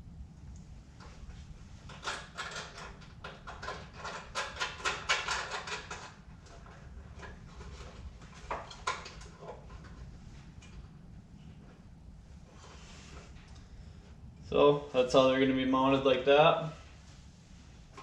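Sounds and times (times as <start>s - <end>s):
metal hardware clicking and rattling: 1.9s - 7.4s.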